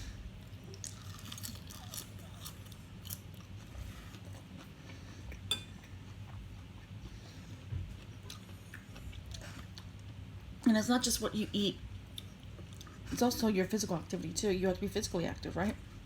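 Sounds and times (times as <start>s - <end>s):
person chewing crunchy food: 0.4s - 10.3s.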